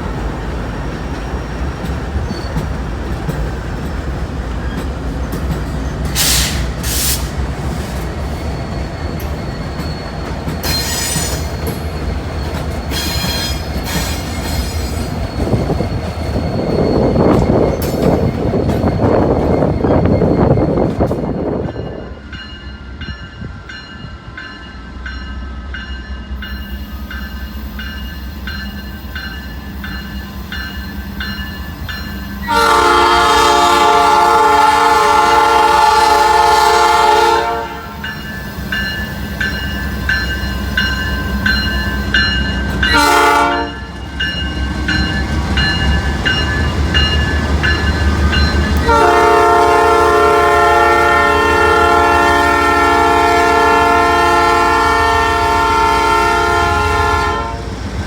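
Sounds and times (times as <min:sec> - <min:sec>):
locomotive air horn blasts: 0:32.4 - 0:38.0, 0:42.9 - 0:43.9, 0:48.8 - 0:57.7.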